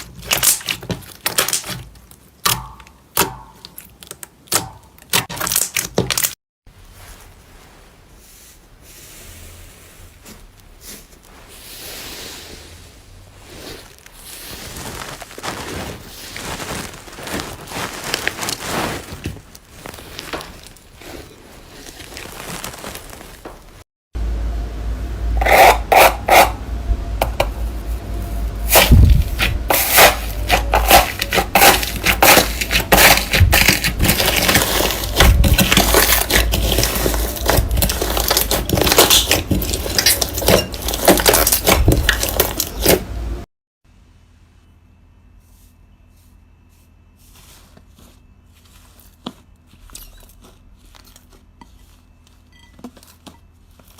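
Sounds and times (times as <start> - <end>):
slime crackling and squishing by hand: 13.3 - 23.8, 30.4 - 43.0, 47.3 - 53.9.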